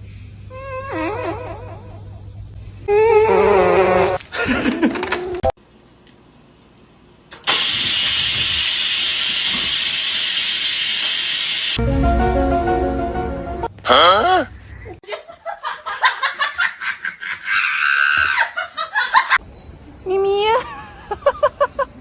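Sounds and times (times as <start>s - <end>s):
loud rushing hiss: 7.4s - 11.8s.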